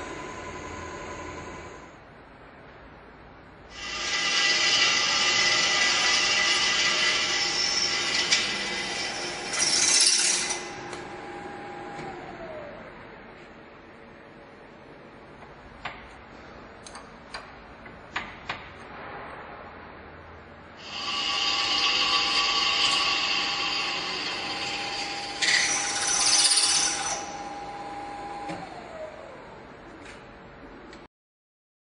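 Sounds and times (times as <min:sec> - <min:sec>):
milling machine spindle whining: 0:03.8 - 0:12.8, 0:20.8 - 0:29.4.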